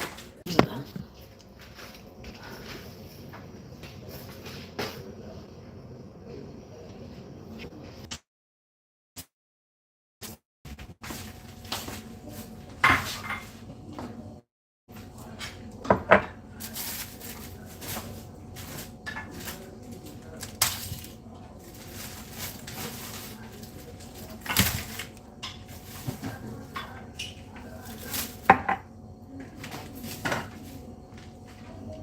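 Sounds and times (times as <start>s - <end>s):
dishes and containers clinking: 12.8s - 13.6s.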